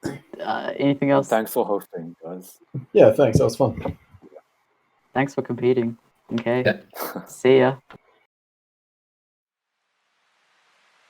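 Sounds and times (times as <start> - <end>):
faint hiss: 9.7 - 11.0.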